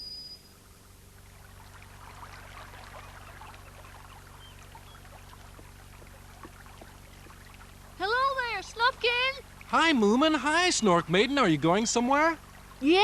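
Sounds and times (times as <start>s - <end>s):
faint short chirps: 0.0s - 0.6s
babbling stream: 0.9s - 13.0s.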